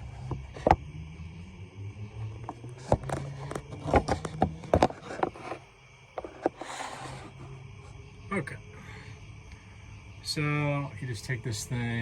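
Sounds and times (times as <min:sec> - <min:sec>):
low hum: 0:00.0 - 0:12.0
hard objects knocking and clicking: 0:00.2 - 0:00.8, 0:02.4 - 0:05.6, 0:06.2 - 0:07.2.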